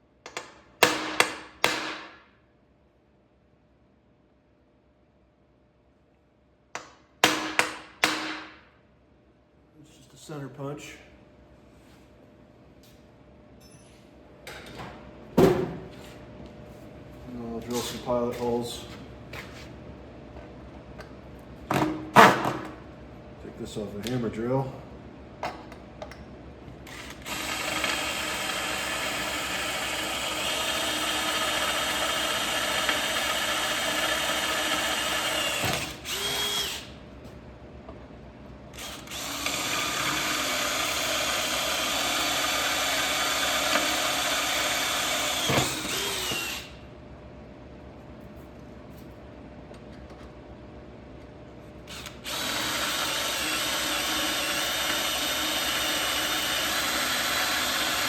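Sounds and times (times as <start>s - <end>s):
drill motor winding down: 26.9s - 36.9s, 38.8s - 46.8s, 51.9s - 58.0s
hammer drill drilling metal: 26.9s - 36.9s, 38.8s - 46.8s, 51.9s - 58.0s.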